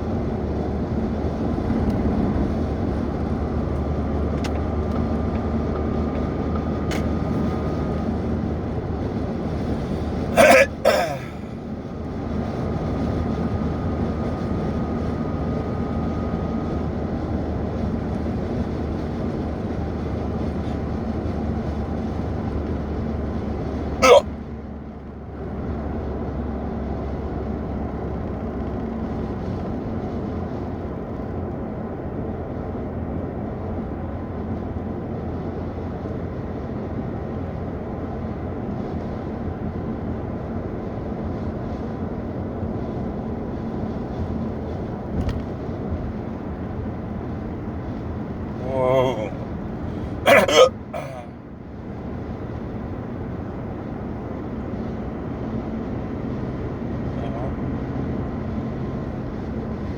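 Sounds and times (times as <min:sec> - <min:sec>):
car cabin drone: 0:00.0 - 0:24.2, 0:24.9 - 0:59.9
man hiccuping: 0:10.4 - 0:11.5, 0:24.0 - 0:24.3, 0:48.6 - 0:51.4, 0:57.2 - 0:57.6.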